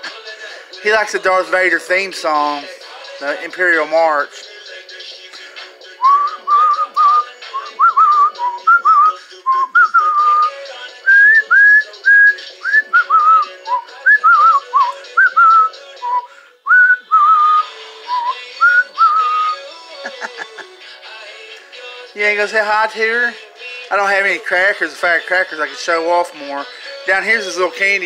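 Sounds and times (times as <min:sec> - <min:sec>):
soft music: 0:00.0 - 0:28.0
cockatiel whistling: 0:06.0 - 0:10.5, 0:11.1 - 0:19.6.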